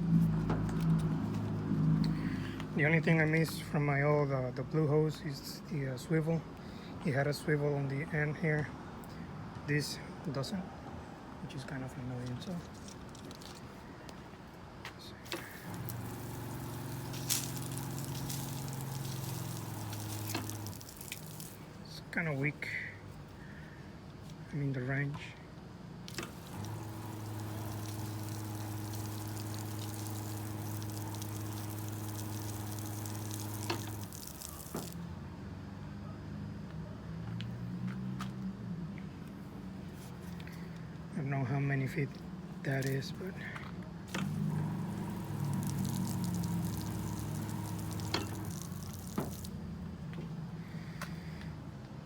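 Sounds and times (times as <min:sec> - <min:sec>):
spray pump humming: 0:15.2 - 0:21.8, 0:26.1 - 0:35.0, 0:42.7 - 0:43.0, 0:44.1 - 0:49.6
water spray hissing: 0:15.2 - 0:21.8, 0:26.1 - 0:35.0, 0:42.7 - 0:43.1, 0:44.1 - 0:49.6.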